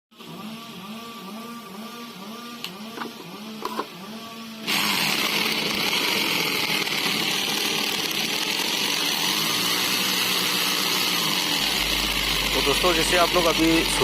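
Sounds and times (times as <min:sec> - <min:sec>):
hammer drill rasping: 0:00.4 - 0:14.0.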